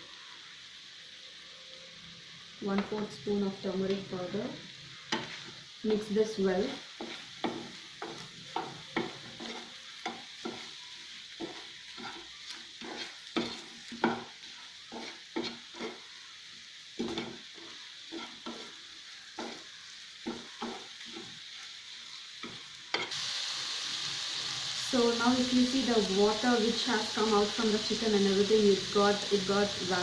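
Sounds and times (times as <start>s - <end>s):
chicken sizzling: 0.0s - 30.0s
utensil scraping a pan: 7.0s - 10.7s, 11.4s - 16.1s, 17.0s - 18.8s.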